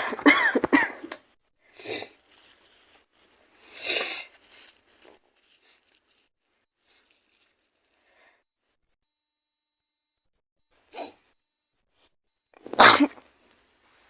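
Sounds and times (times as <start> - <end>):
woman sneezing: 0.0 - 1.0, 12.7 - 13.2
faint rustles: 2.2 - 3.6, 4.2 - 8.1.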